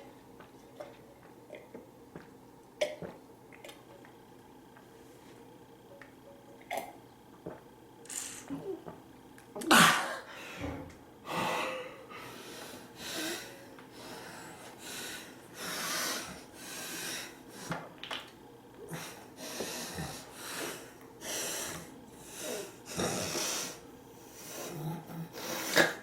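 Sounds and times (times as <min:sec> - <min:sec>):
person breathing heavily: 0:10.2 - 0:17.6
snorts: 0:22.4 - 0:23.8, 0:24.4 - 0:26.0.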